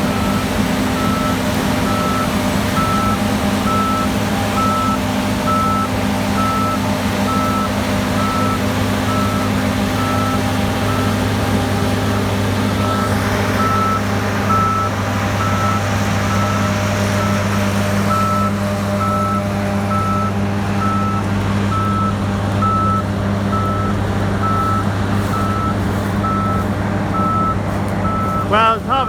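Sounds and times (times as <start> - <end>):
heavy machinery engine running: 0.0 - 29.0
electronic warning beeper: 12.2 - 17.5, 18.1 - 29.0.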